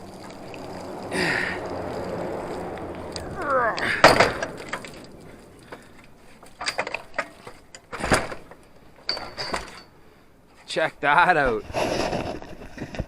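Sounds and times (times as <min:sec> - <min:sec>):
metallic knocks and rattles: 0:03.8 - 0:10.0.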